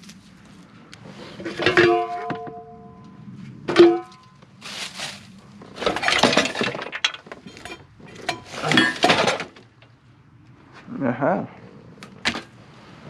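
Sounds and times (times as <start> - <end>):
junk rattling and scraping: 0.0 - 10.0
scrap metal clanking and ringing: 1.4 - 3.1, 3.7 - 4.4, 5.8 - 9.6.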